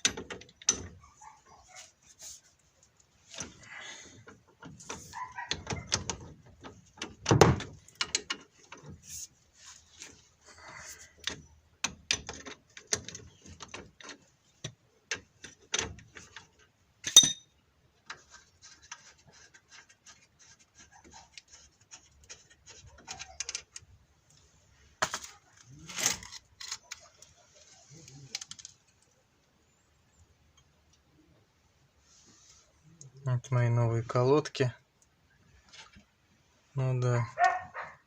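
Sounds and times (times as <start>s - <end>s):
metal tools clinking and clattering: 17.1s - 17.5s
sharp metal clank: 17.1s - 17.5s.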